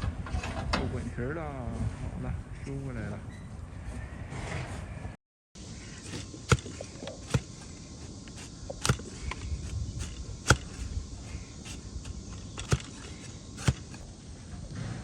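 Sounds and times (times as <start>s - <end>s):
donkey hooves clacking: 5.6s - 14.2s
steady background hum: 5.6s - 15.0s.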